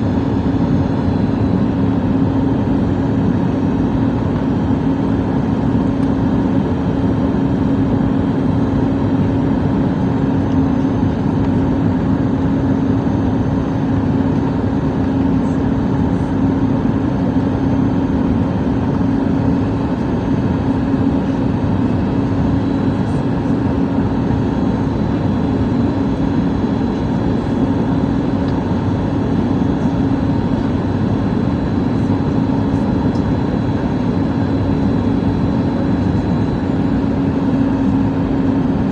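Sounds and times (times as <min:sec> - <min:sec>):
airliner cabin drone: 0:00.0 - 0:38.9.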